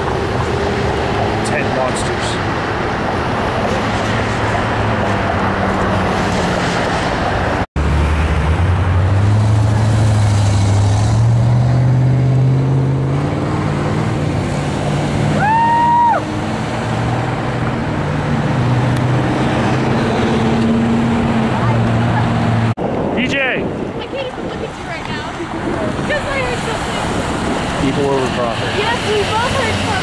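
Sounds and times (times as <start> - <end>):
vehicle engine pulling away: 7.8 - 15.5.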